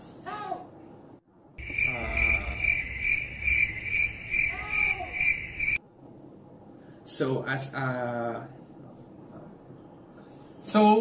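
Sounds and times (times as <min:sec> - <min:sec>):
cricket-like chirping trill: 0:01.6 - 0:05.8.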